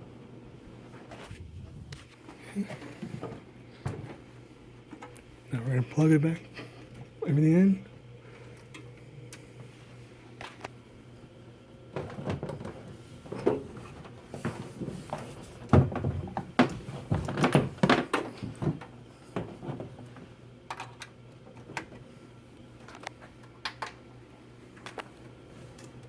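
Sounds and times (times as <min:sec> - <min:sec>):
cables plugging into computer: 0:22.8 - 0:24.0.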